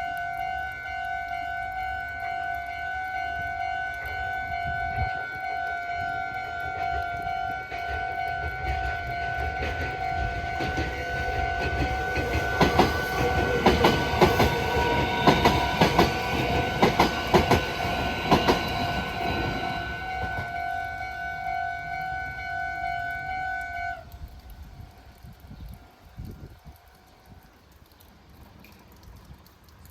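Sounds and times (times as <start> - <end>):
train wheels clattering over rail joints: 7.8 - 20.5.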